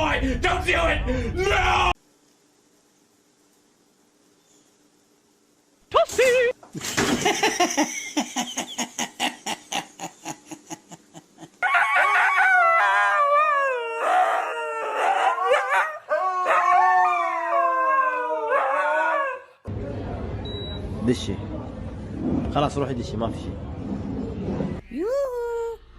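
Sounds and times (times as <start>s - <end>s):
dog howling: 11.6s - 19.6s.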